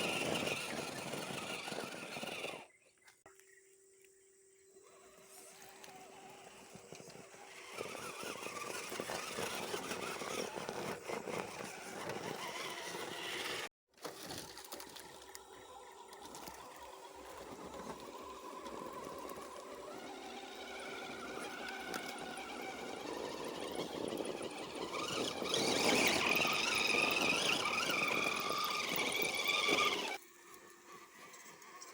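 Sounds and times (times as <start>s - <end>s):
electric motor whining: 0.0s - 2.8s, 4.8s - 13.7s, 14.6s - 31.9s.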